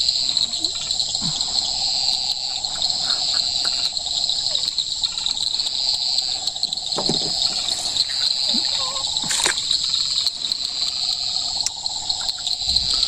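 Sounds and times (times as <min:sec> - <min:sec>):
insects trilling: 0:00.0 - 0:13.0.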